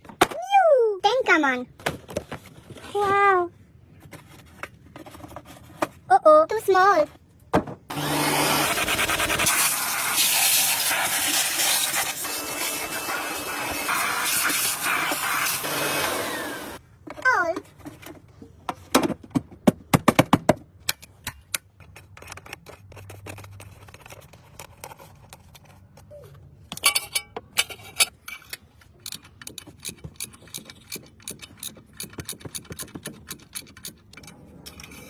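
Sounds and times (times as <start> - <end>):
hand tools clicking and knocking: 26.7 - 35.0.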